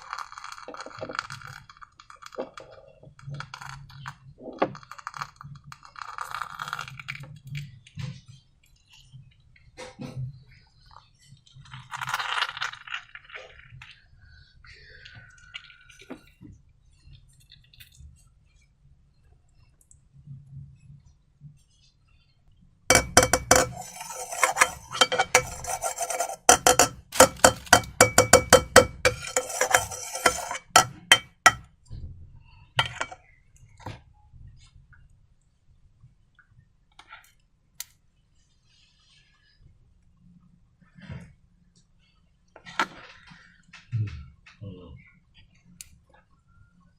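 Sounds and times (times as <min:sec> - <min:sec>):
utensil clinking against bowl: 0:22.9 - 0:31.7, 0:32.8 - 0:33.2.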